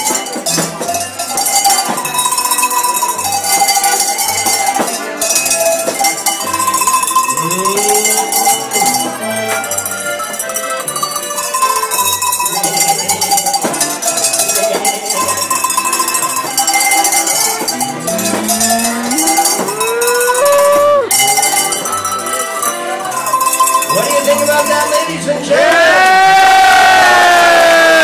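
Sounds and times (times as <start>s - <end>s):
cowbell struck: 0.0s - 25.3s
music with bass line: 4.2s - 11.1s, 17.3s - 25.5s.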